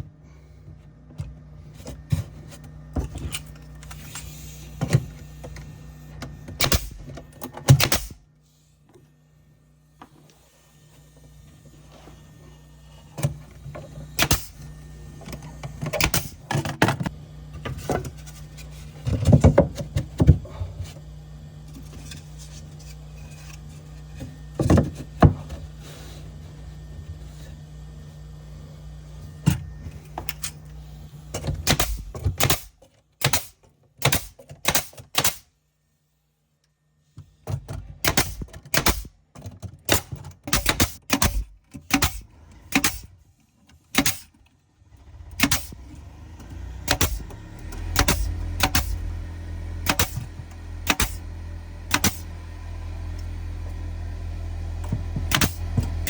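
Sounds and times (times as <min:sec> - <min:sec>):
low machine hum: 0:44.9 - 0:56.0
sharp clicks and knocks: 0:49.8 - 0:51.3.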